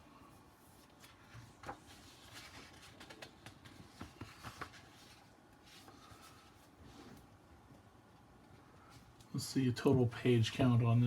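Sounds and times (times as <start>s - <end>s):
book handling rustling: 0.6s - 7.3s.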